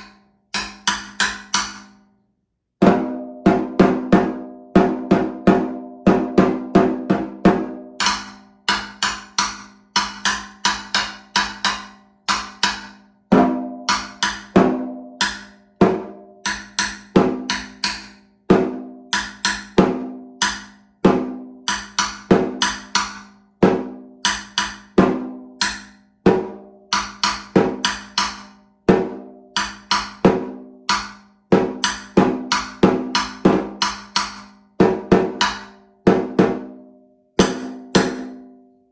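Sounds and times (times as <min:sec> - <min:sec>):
snare drum solo: 0:02.8 - 0:08.1, 0:26.3 - 0:36.8, 0:37.4 - 0:38.5.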